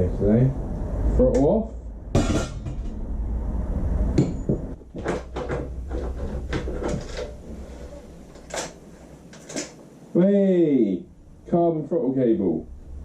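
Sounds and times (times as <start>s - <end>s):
low rumble: 0.0s - 4.9s, 11.0s - 11.6s, 12.5s - 13.0s
tools and parts clicking and knocking: 4.2s - 7.4s, 8.3s - 9.8s.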